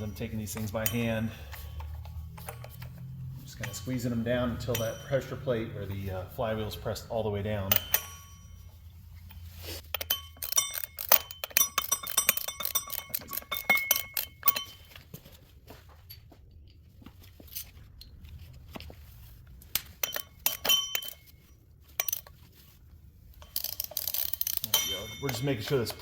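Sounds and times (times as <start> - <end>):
metal bolts clinking: 0.0 - 15.3, 19.6 - 22.4, 23.4 - 26.0.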